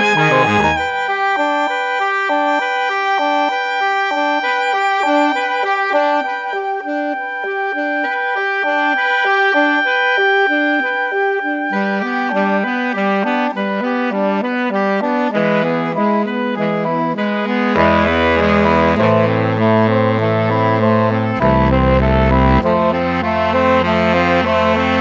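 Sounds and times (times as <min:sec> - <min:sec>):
instrumental background music: 0:00.0 - 0:14.6, 0:15.4 - 0:25.0.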